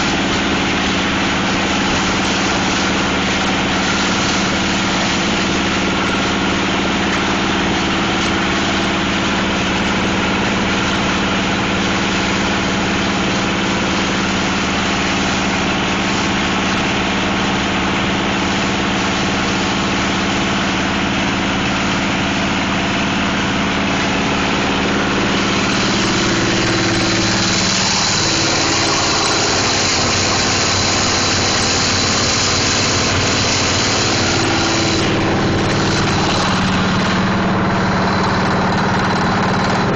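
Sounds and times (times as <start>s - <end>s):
plastic crusher machine humming: 0.0s - 39.9s.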